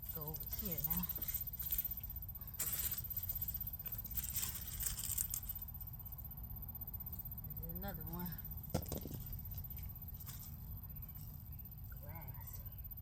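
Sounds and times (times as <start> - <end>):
soil scraping and rustling: 0.0 - 6.0, 8.8 - 11.8
steady low rumble: 0.0 - 13.0.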